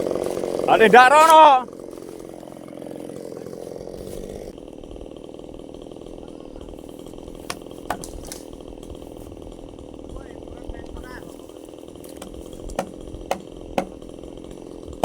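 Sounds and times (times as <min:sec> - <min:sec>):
chainsaw engine running: 0:00.0 - 0:15.0.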